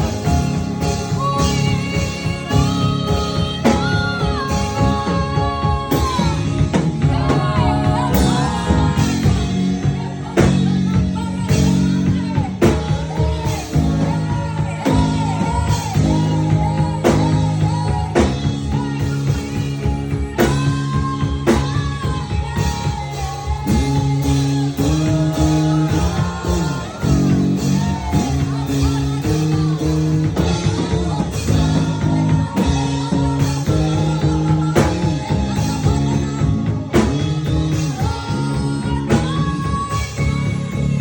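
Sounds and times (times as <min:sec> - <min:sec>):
guitar: 0:00.0 - 0:41.0
person singing: 0:00.0 - 0:41.0
steady drum beat: 0:00.0 - 0:41.0.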